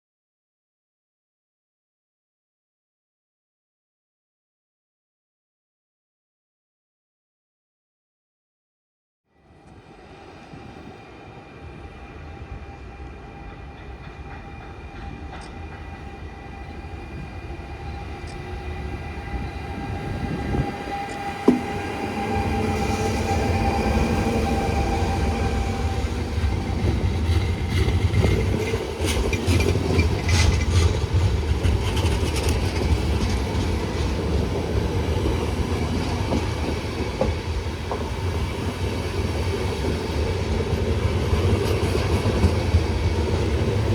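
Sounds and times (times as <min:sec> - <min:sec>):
electric train rumbling: 0:09.4 - 0:43.9
train wheels clicking over joints: 0:13.5 - 0:16.1, 0:26.4 - 0:34.8.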